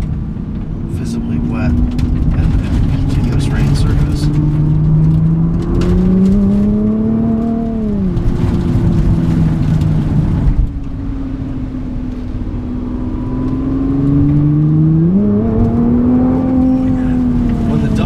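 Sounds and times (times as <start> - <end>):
car engine inside cabin: 0.0 - 18.0
gearbox shifting: 1.0 - 11.0.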